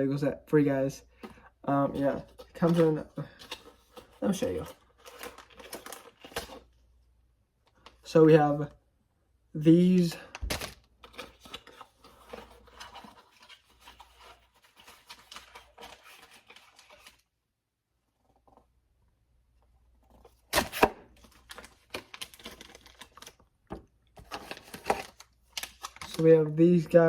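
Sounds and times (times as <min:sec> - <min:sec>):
packaging rustling and clicking: 0:02.2 - 0:06.8, 0:10.3 - 0:17.3, 0:20.2 - 0:26.2.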